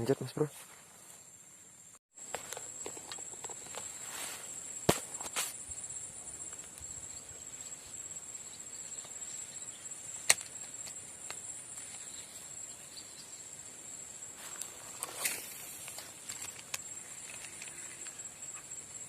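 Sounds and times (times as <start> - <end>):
high-pitched insect chorus: 0.0 - 19.0.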